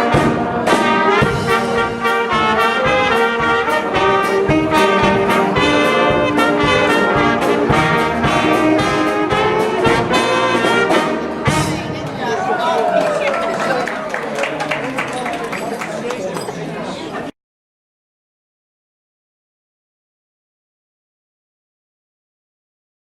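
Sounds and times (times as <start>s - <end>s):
brass band tune with drums: 0.0s - 12.4s.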